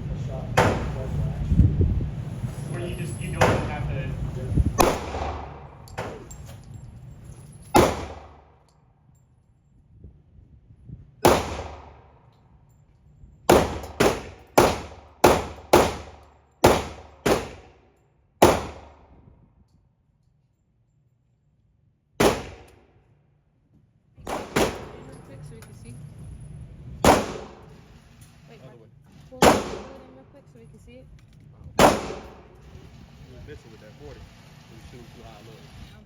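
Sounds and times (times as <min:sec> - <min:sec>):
handgun shots echoing indoors: 0:04.8 - 0:06.4, 0:07.8 - 0:08.5, 0:24.2 - 0:25.2.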